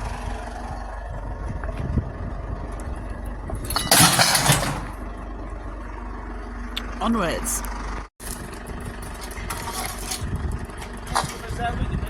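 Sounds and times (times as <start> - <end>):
truck engine idling: 0.0 - 12.0
loud harsh crash: 3.8 - 5.0.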